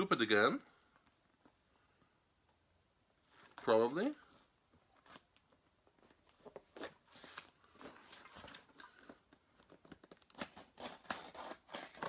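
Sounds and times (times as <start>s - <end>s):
tape ripping: 9.6s - 12.0s
cardboard tearing and crunching: 9.9s - 12.0s.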